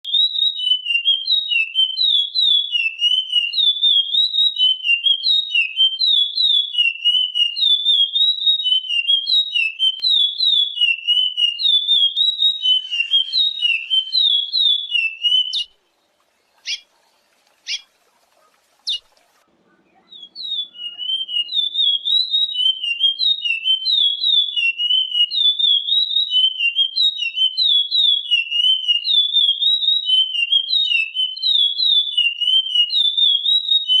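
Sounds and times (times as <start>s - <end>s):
finch singing warbling song: 8.6s - 27.6s
short sharp bird notes: 10.8s - 23.1s.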